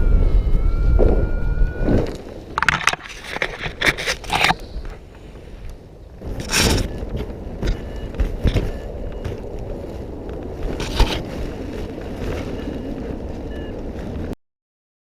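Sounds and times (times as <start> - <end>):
wind rumbling on microphone: 0.0 - 14.4
handling bumps: 6.2 - 11.3.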